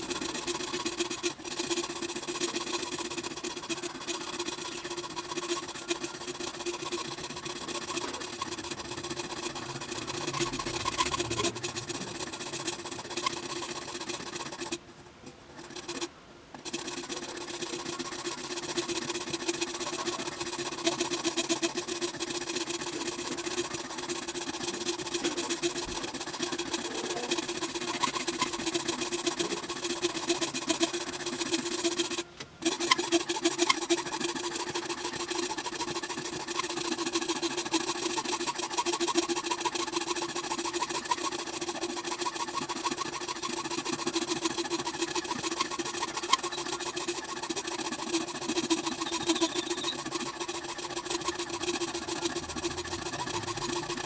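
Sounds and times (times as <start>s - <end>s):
power tool grinding: 0.0s - 14.8s, 15.6s - 54.0s.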